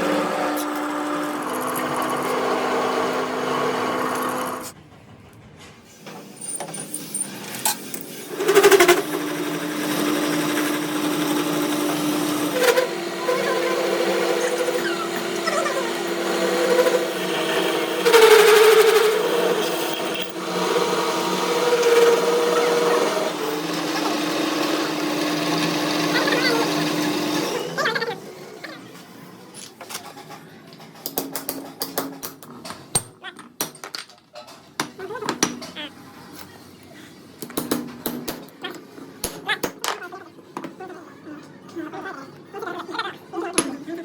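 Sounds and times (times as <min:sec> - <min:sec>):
lathe cutting noise: 0:00.0 - 0:04.8, 0:08.1 - 0:28.6
metal lathe motor hum: 0:00.0 - 0:04.8, 0:08.1 - 0:28.6.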